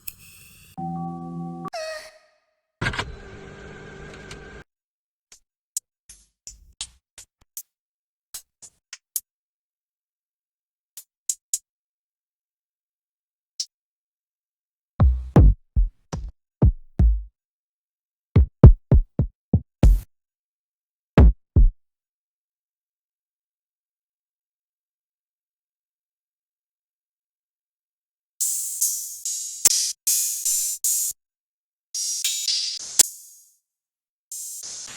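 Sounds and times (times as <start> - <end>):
synth tone sliding down: 0.8 - 1.7
faint held tones: 0.8 - 1.8
deep kick drum hits: 15.0 - 17.3, 18.4 - 20.0, 21.2 - 21.8
crisp hi-hat hits: 19.8 - 20.0.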